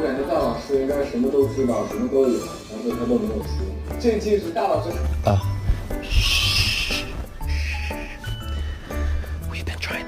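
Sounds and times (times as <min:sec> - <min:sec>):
background music with bass: 0:00.0 - 0:10.0
harsh high-pitched animal cry: 0:06.0 - 0:08.5.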